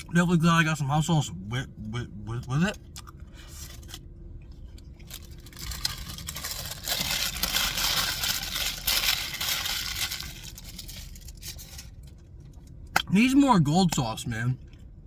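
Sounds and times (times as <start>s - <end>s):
paper wrapper crinkling: 5.0s - 12.2s.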